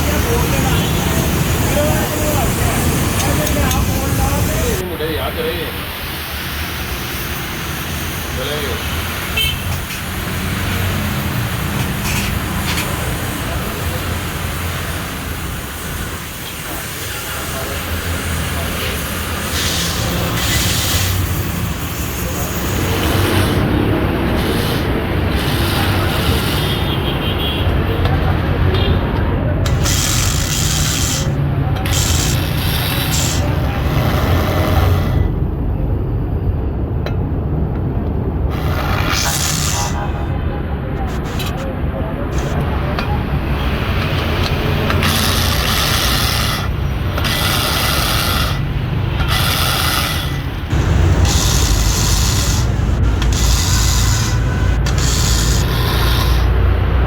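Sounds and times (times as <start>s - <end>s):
low mechanical rumble: 29.7s - 57.0s.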